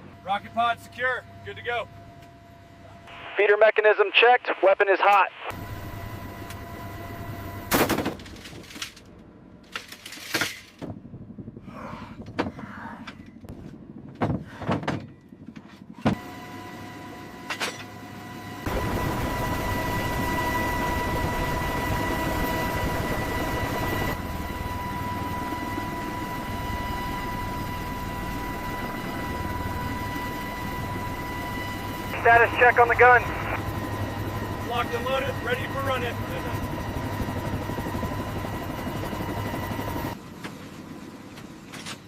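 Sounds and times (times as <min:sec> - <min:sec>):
aircraft engine whining: 0:16.2 - 0:42.0.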